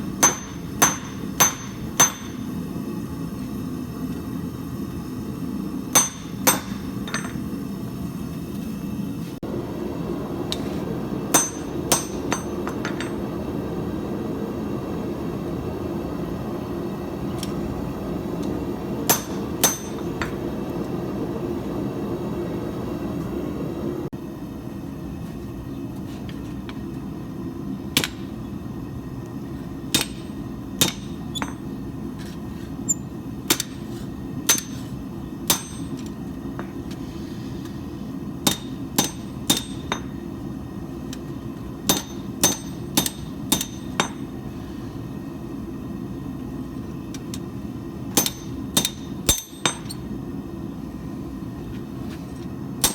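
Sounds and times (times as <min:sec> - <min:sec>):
hammer striking steel on anvil: 0:00.2 - 0:02.5, 0:05.9 - 0:07.4, 0:11.3 - 0:13.2, 0:19.0 - 0:20.4, 0:28.0 - 0:28.3, 0:29.9 - 0:31.7, 0:32.9 - 0:36.8, 0:38.4 - 0:40.2, 0:41.8 - 0:44.3, 0:48.1 - 0:50.1.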